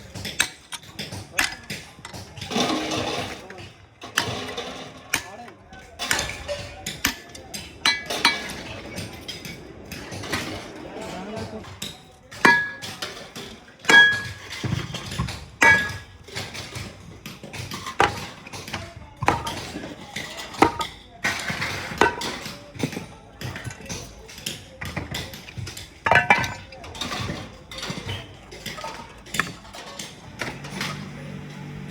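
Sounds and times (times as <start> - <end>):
hammer striking metal: 12.4 - 13.2, 13.8 - 16.9, 25.8 - 29.8.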